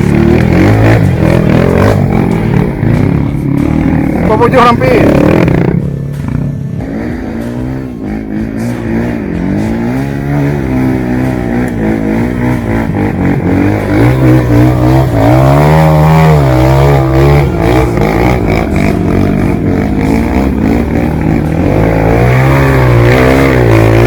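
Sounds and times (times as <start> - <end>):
motorcycle engine revving: 0.0 - 24.0.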